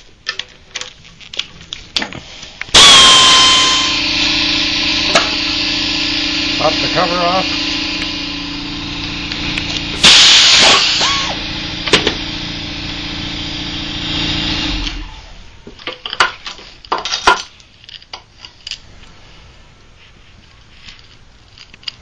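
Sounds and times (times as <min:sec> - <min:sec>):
power tool burst: 0:02.7 - 0:15.4
workshop machine humming: 0:02.7 - 0:15.9.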